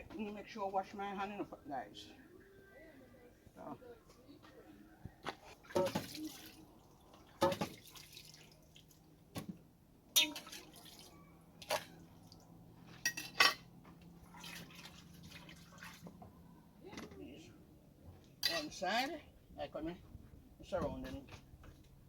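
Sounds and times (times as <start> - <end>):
water splashing and dripping: 5.6 - 9.5, 10.2 - 12.5, 14.2 - 16.2.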